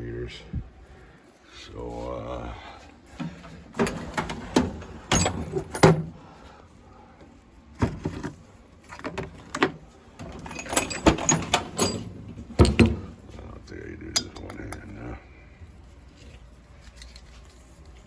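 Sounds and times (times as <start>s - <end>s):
metal hand tools clanking: 10.2s - 13.4s, 14.1s - 14.9s.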